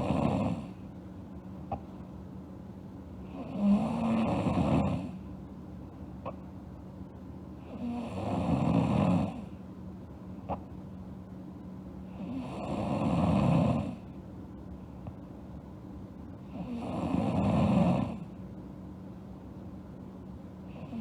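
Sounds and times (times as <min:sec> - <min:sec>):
girl snoring: 0:00.0 - 0:00.8, 0:03.3 - 0:05.2, 0:07.7 - 0:09.5, 0:12.2 - 0:14.0, 0:16.5 - 0:18.3, 0:20.7 - 0:21.0.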